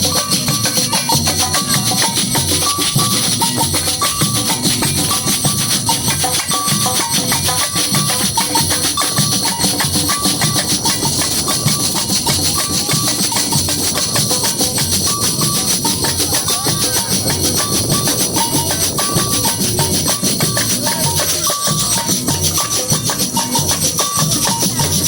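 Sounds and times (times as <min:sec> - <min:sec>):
shakers and jingles rattling: 0:00.0 - 0:25.0
deep bass drums beating: 0:07.9 - 0:21.9.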